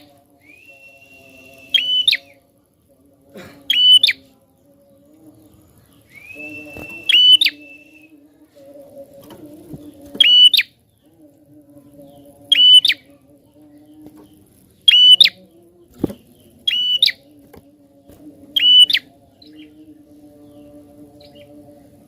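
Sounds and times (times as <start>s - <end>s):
faint low hum: 0.0s - 22.0s
bird calling: 6.1s - 8.0s.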